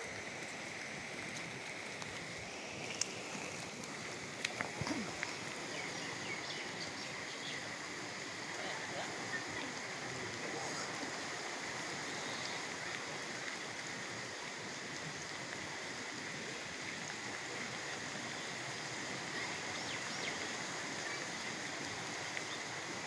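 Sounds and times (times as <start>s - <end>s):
floodwater rushing: 0.0s - 23.0s.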